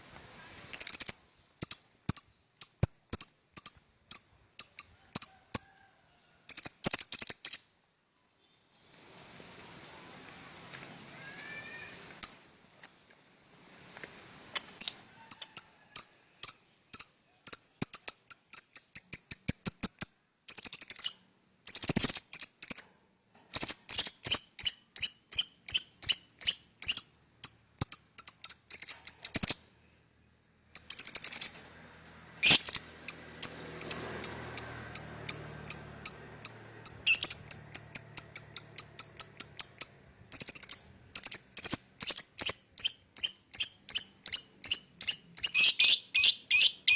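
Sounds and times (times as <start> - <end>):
lovebird chattering shrill chirps: 0.7 - 5.6, 6.5 - 7.7, 12.2 - 12.5, 14.8 - 22.8, 23.6 - 29.6, 30.8 - 31.6, 32.4 - 46.9.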